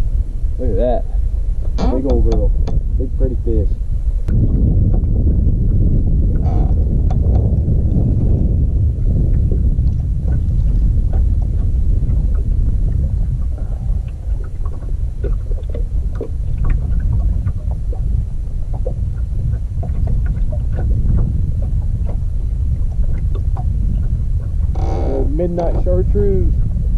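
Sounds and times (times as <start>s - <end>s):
wind buffeting microphone: 0.0s - 26.9s.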